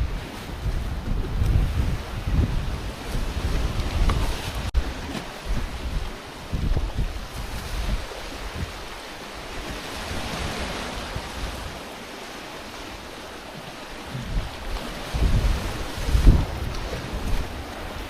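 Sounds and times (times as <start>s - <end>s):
sea surf rushing: 0.0s - 18.0s
wind buffeting microphone: 0.0s - 18.0s.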